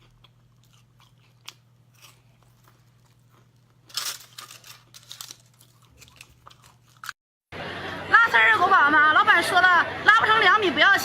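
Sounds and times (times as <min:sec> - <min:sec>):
loud crackling while eating: 0:00.0 - 0:07.2.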